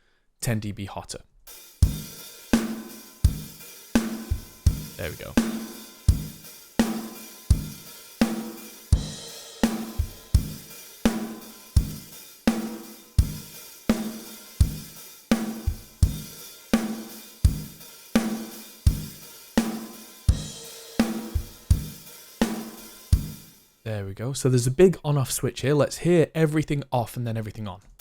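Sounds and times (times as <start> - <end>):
drum kit playing a beat: 1.5 - 23.7.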